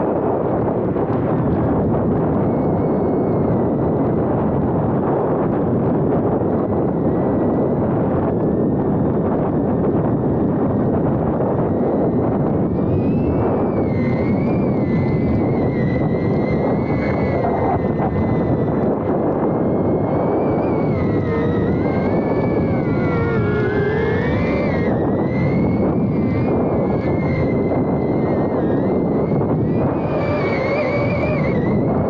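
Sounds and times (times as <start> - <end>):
wind rumble on microphone: 0.0 - 32.0
drone motors whining: 11.5 - 32.0.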